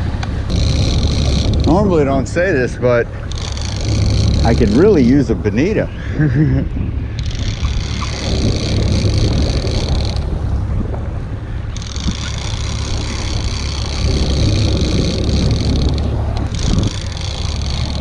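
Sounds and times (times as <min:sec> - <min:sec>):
high whirring: 0:00.0 - 0:18.0
wind buffeting microphone: 0:00.0 - 0:18.0.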